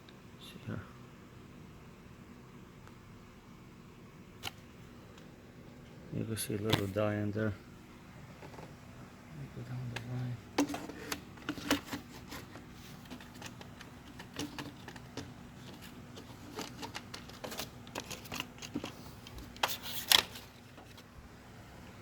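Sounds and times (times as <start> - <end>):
faint steady hum: 0.0 - 22.0
clicks and rustles of handling: 4.4 - 7.2, 9.6 - 21.2.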